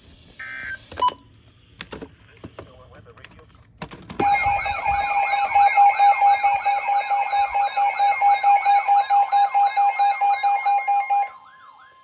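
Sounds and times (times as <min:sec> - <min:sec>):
siren-like electronic sweeps: 0:04.2 - 0:12.0.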